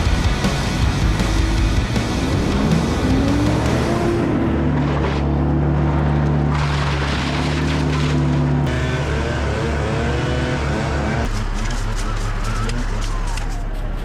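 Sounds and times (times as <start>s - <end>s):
engines running: 0.0s - 14.0s.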